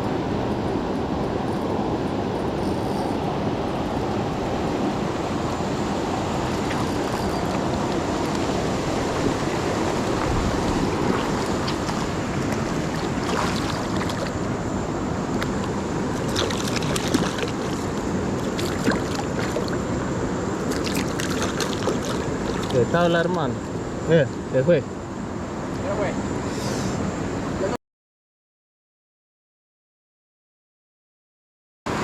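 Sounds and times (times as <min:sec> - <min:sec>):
river water rushing: 0:00.0 - 0:23.2.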